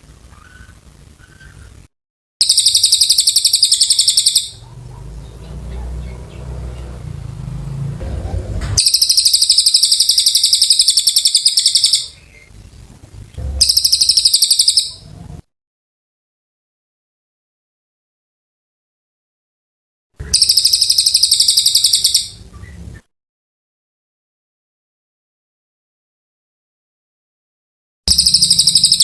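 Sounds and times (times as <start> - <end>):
bird trilling: 2.4 - 12.5, 13.5 - 15.2, 20.2 - 22.8, 28.1 - 29.0
low rumble: 4.6 - 9.4, 12.5 - 14.2.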